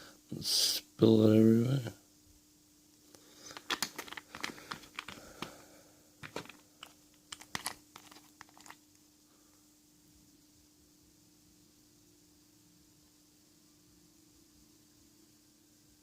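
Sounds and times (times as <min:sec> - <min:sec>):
faint steady hum: 0:00.0 - 0:16.0
metal parts clicking and tapping: 0:03.5 - 0:05.3, 0:06.2 - 0:08.8.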